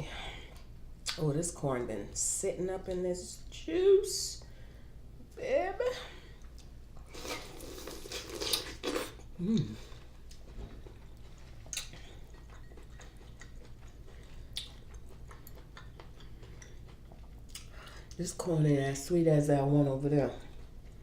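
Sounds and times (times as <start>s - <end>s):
soft chewing clicks: 6.4s - 7.1s, 9.2s - 18.2s, 20.4s - 21.0s
wet biting and sucking: 7.0s - 9.2s
person humming: 9.4s - 9.9s.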